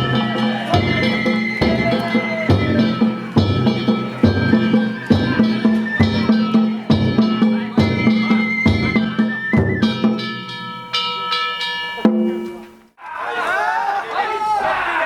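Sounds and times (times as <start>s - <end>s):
bamboo flute melody: 0.0s - 10.6s
taiko drum strikes: 0.0s - 10.6s
hand gongs ringing: 0.0s - 12.7s.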